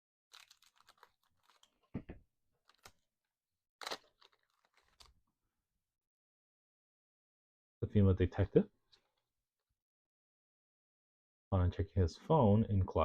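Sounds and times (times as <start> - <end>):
foil pack crinkling: 0.3 - 1.9, 2.6 - 3.1, 3.8 - 5.2.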